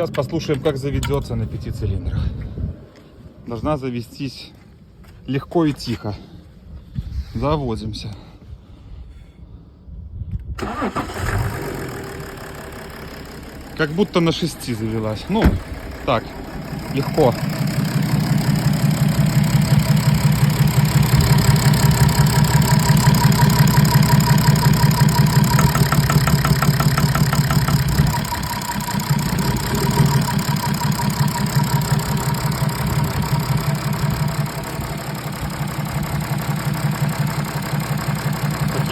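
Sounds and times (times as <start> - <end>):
diesel engine idling: 10.6 - 38.9.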